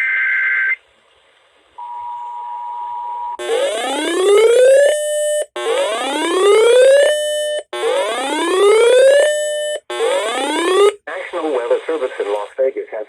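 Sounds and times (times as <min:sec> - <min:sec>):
electronic whoop alert tone: 0:03.4 - 0:11.0.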